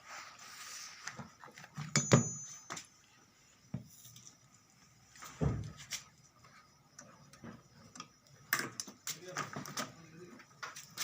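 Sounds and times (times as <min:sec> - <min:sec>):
tools knocking and clicking: 0:01.8 - 0:02.5.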